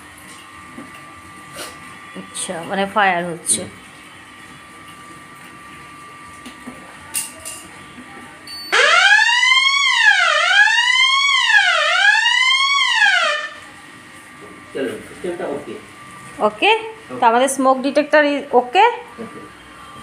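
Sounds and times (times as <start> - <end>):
electronic fire alarm siren wailing: 8.7 - 13.7.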